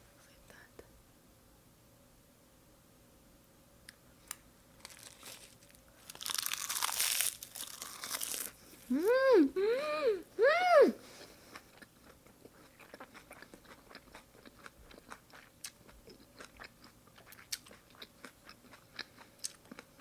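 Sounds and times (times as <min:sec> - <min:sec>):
person chewing food: 0:04.8 - 0:09.2, 0:11.1 - 0:20.0.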